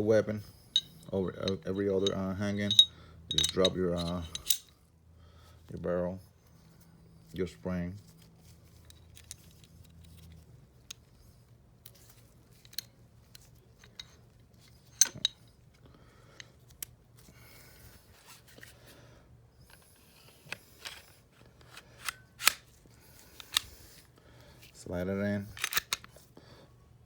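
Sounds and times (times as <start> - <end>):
metal parts scraping: 0.8 - 4.7
pistol parts clicking: 0.8 - 4.7, 14.9 - 15.4, 21.8 - 22.7, 23.3 - 23.8, 25.5 - 26.2.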